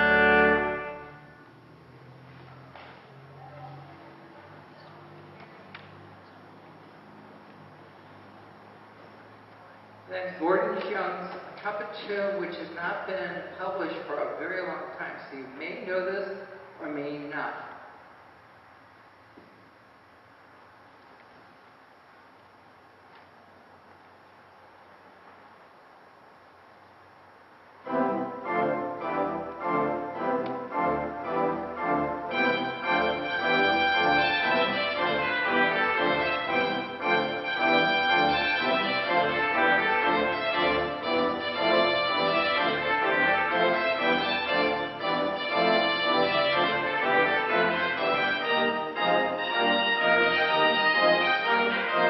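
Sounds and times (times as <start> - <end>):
organ playing processional: 0.0 - 2.0, 27.8 - 52.0.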